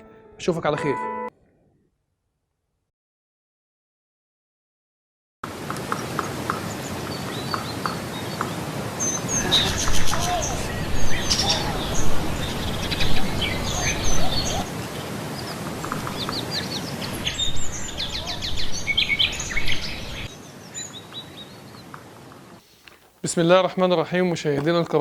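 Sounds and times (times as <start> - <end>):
small birds chirping: 5.8 - 22.2.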